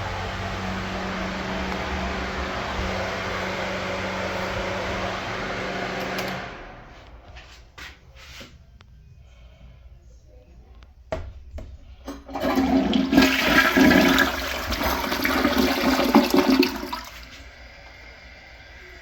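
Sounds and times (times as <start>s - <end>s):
toilet water rushing: 0.0s - 7.0s, 12.0s - 19.0s
toilet flush clicks: 6.0s - 6.5s, 12.0s - 19.0s.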